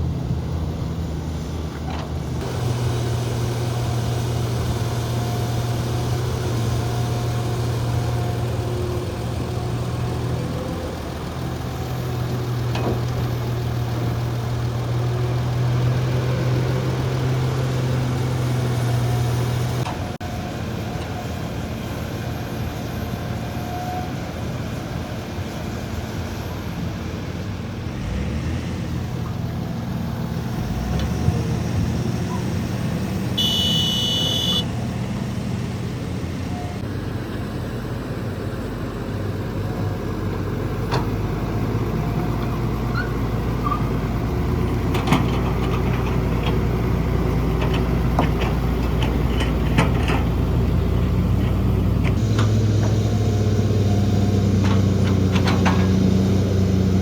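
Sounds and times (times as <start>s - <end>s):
heavy diesel machinery running: 0.0s - 57.0s
knocks and clanks: 54.6s - 56.1s.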